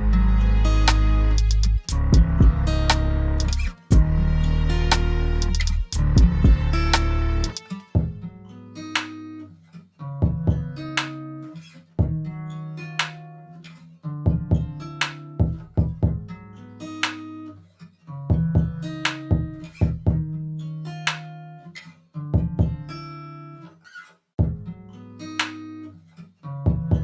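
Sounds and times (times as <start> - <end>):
low bass line: 0.0 - 7.6
plucked guitar notes: 0.0 - 9.4.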